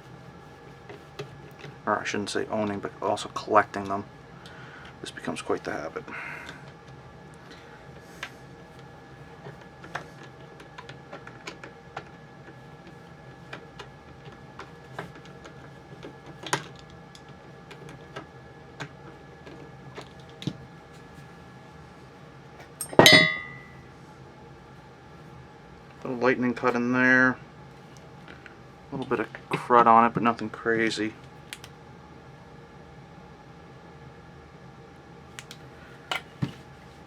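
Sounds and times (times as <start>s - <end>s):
small clicks and scrapes: 0.1s - 1.8s, 6.5s - 21.3s
loud metallic clank: 22.9s - 23.6s.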